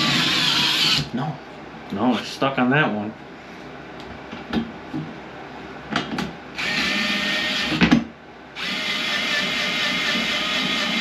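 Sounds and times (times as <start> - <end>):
power drill whining: 0.0 - 1.1, 6.6 - 7.8, 8.6 - 11.0.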